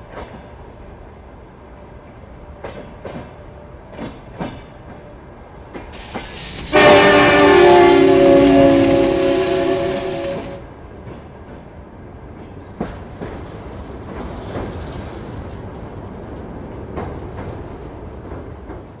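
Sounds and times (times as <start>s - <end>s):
train carriages rumbling: 6.0s - 10.6s
wheels clacking over rail joints: 6.0s - 10.6s.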